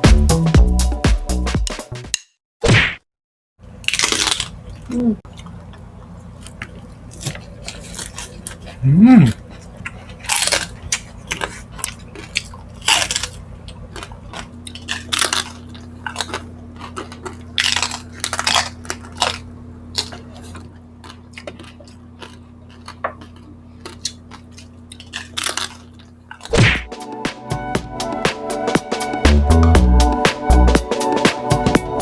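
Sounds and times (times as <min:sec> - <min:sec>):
electronic music with steady beat: 0:00.0 - 0:02.1, 0:26.6 - 0:32.0
chewing with sharp crunches: 0:03.9 - 0:26.5.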